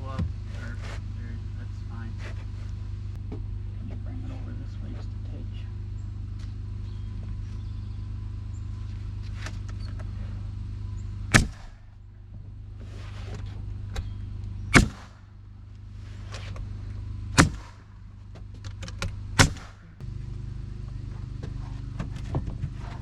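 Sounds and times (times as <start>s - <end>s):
steady low hum: 0.0s - 23.0s
hammer striking nails into wood: 11.3s - 11.8s, 14.7s - 15.2s, 17.4s - 17.8s, 18.8s - 19.8s.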